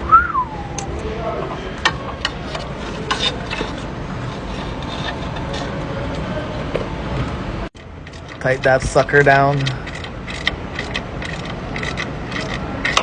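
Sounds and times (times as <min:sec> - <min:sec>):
steady low hum: 0:00.0 - 0:13.0
metallic clicks and scrapes: 0:01.8 - 0:06.3, 0:07.8 - 0:13.0.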